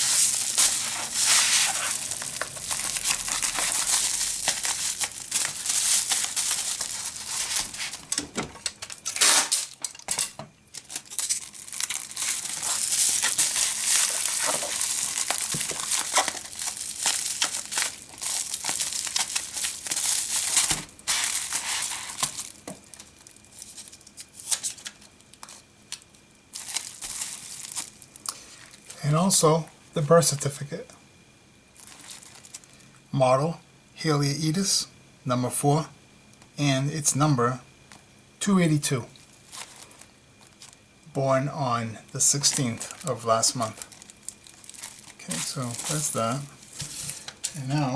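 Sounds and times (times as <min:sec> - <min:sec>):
wrapping material crinkling: 0:00.0 - 0:08.2, 0:08.8 - 0:10.0, 0:10.7 - 0:29.0, 0:31.7 - 0:32.8, 0:39.1 - 0:40.9, 0:42.2 - 0:47.9.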